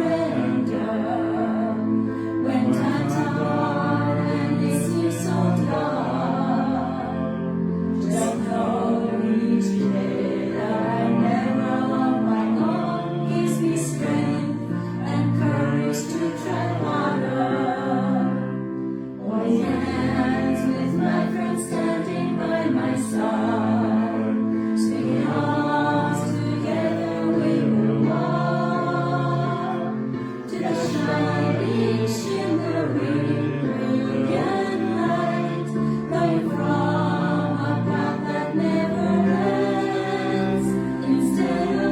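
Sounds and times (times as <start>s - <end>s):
choir singing sustained notes: 0.0s - 41.9s.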